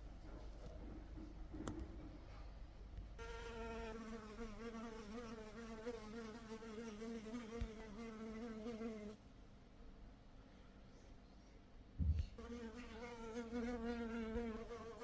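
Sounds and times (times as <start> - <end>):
honey bee buzzing in flight: 3.2 - 9.2, 12.4 - 15.0.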